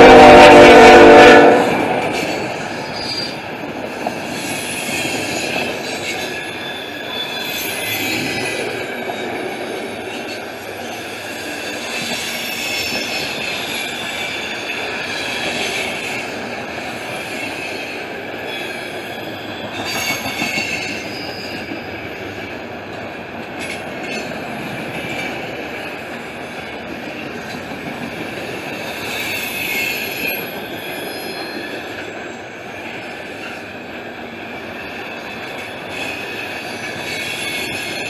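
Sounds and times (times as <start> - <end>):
rumble of train wheels on track: 0.0 - 38.0
high-pitched wheel squeal: 0.9 - 16.3, 17.3 - 22.0, 28.8 - 32.0, 35.1 - 38.0.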